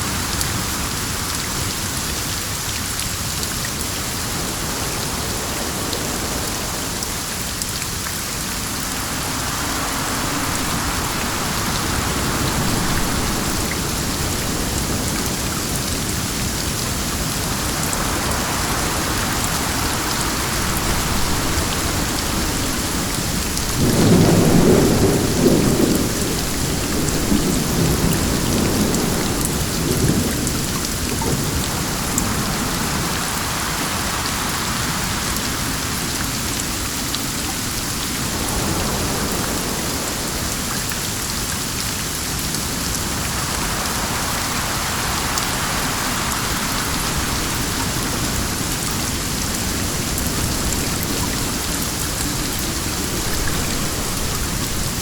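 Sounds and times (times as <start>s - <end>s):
steady rain: 0.0s - 55.0s
thunder rumbling: 8.6s - 34.0s, 42.4s - 55.0s.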